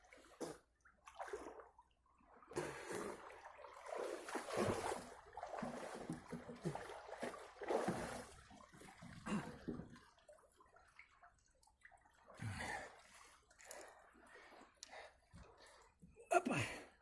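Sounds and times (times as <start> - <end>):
water splashing around swimmer: 0.2 - 13.3.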